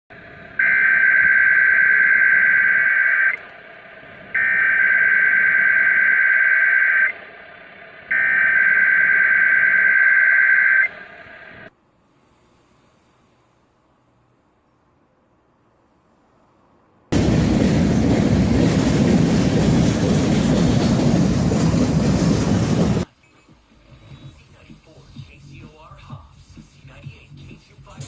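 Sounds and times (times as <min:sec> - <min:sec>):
digital data tone bursts: 0:04.4 - 0:07.2
radio hiss: 0:23.1 - 0:28.0.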